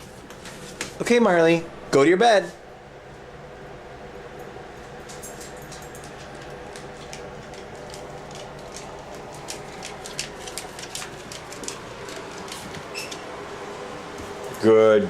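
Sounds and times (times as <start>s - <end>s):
room hum: 0.0s - 15.0s
dog claws clicking: 5.0s - 13.2s.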